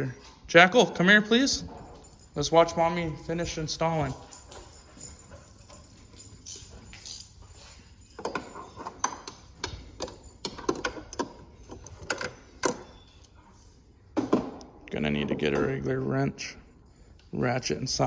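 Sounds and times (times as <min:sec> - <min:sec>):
metal parts clinking: 0:01.6 - 0:13.2.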